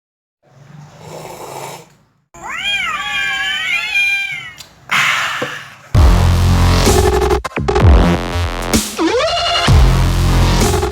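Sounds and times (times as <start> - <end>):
meow-like animal call: 2.4 - 5.7
electronic music with heavy beat: 6.0 - 10.9.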